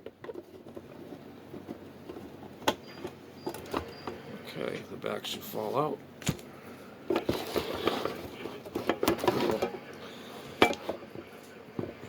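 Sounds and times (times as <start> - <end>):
metal case handling noise: 6.2 - 9.8.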